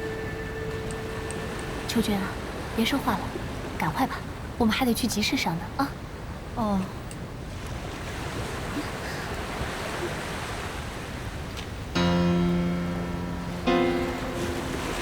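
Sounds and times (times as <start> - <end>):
background music held note: 0.0 - 3.5, 12.0 - 15.0
sea waves washing on shore: 0.0 - 6.6, 7.3 - 15.0.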